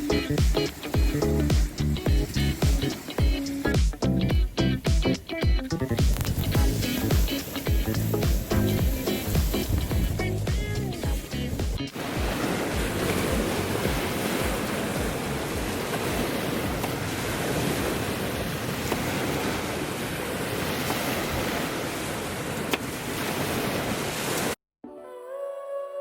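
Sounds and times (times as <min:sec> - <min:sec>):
campfire hissing and crackling: 0:00.0 - 0:04.0, 0:06.1 - 0:13.6.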